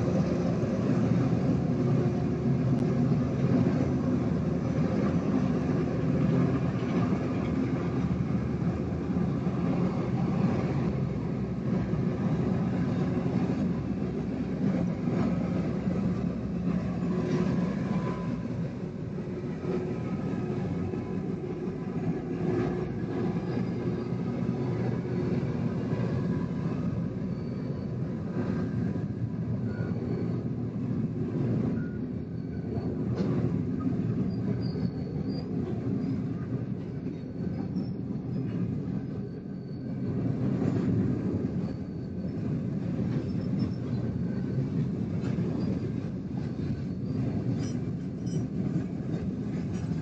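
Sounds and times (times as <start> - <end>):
train rumbling on track: 0.0 - 50.0
wheel squeal: 26.4 - 28.8, 29.5 - 30.6, 31.7 - 36.3, 37.1 - 40.0, 41.5 - 42.4, 45.2 - 48.6.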